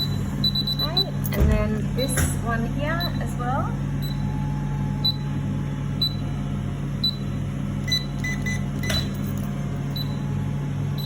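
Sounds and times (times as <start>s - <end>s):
lower key-press beeps: 0.0s - 1.2s, 4.0s - 4.3s, 6.0s - 6.2s, 7.0s - 9.1s
short high keypad beeps: 7.8s - 9.1s.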